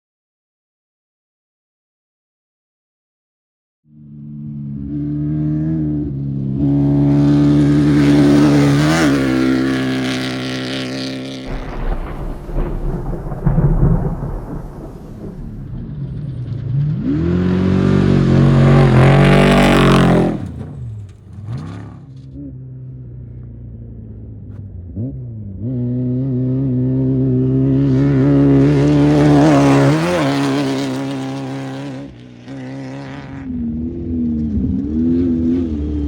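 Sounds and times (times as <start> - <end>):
engine revving: 3.9 - 36.0
race vehicle engines passing: 3.9 - 36.0
rushing rumble: 7.7 - 22.2.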